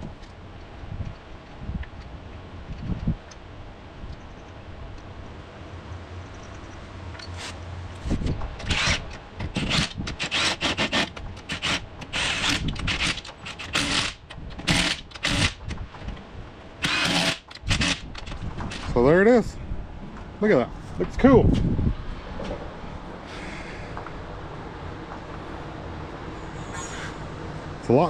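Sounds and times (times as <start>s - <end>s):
low steady hum: 0.0s - 28.0s
impact wrench bursts: 8.6s - 15.7s, 16.8s - 18.8s.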